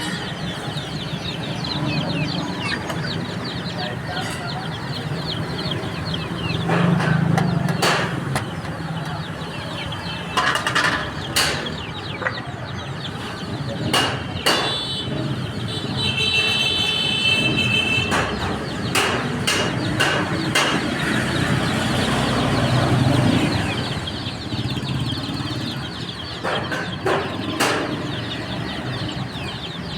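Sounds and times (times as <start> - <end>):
baby chicks chirping: 0.0 - 29.9
sharp knocks: 2.3 - 9.4, 10.2 - 12.5, 13.8 - 15.2, 17.4 - 21.9, 25.3 - 29.9.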